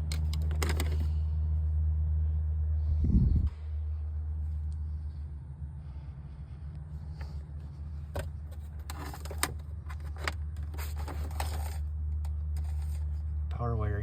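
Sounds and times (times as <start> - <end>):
scrapes and rattling clicks: 0.0 - 1.1, 8.1 - 13.2
steady low hum: 0.0 - 14.0.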